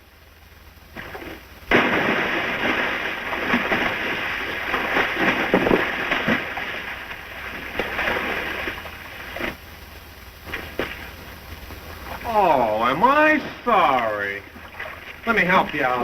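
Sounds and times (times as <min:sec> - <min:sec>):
water splashing and sloshing: 0:00.8 - 0:16.0
person falling into water: 0:01.0 - 0:09.6, 0:10.5 - 0:11.2, 0:12.1 - 0:16.0.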